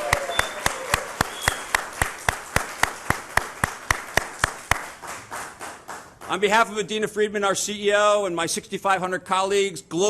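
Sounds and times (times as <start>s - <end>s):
audience clapping in unison: 0.0s - 6.6s.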